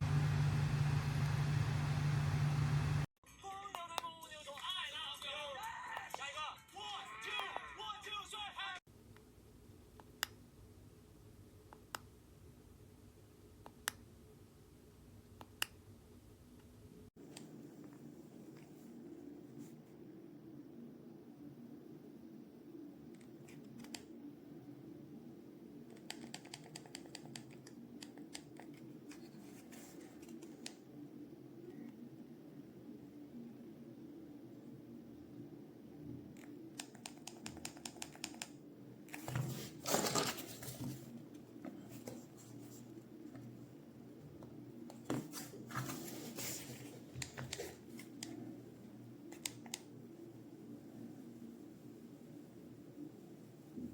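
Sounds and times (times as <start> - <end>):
low steady hum: 0.0 - 3.1
faint room hum: 7.2 - 53.9
handling rustle: 39.1 - 43.6.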